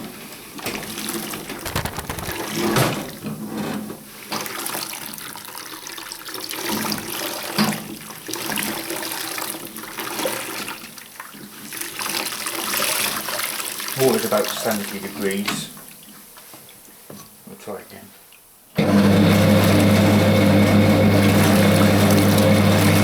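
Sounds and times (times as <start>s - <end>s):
water sloshing in washing machine: 4.3s - 15.0s, 19.0s - 23.0s.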